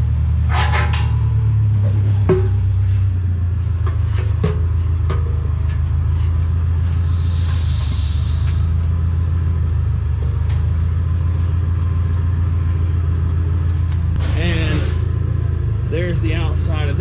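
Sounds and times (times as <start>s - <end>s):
low machine hum: 0.0s - 17.0s
brief hiss: 7.0s - 8.6s.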